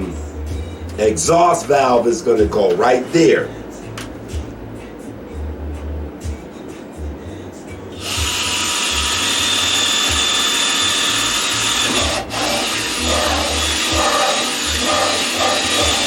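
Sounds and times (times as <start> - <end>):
electric drill boring plastic: 7.9 - 16.0.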